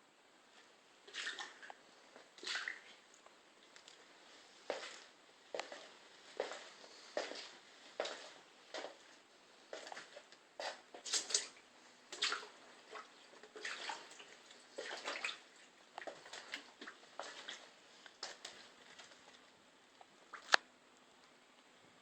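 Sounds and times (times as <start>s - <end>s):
footsteps splashing through water: 1.1s - 3.0s, 9.8s - 19.3s.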